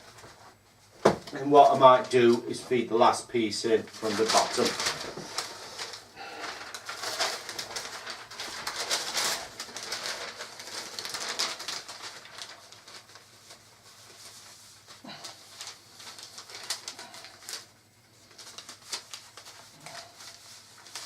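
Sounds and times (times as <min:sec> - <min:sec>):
cardboard pieces rustling and scraping: 0:04.0 - 0:21.0.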